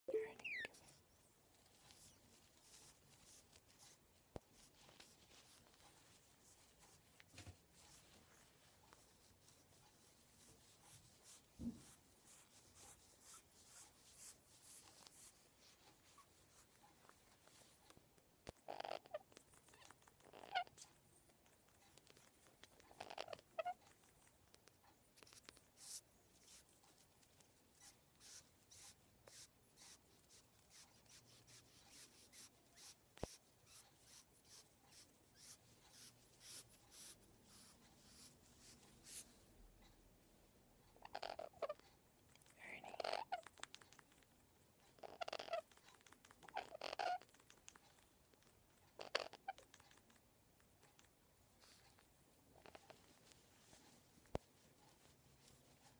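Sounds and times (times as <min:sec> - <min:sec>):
parrot squeaky calls: 0:00.2 - 0:00.8.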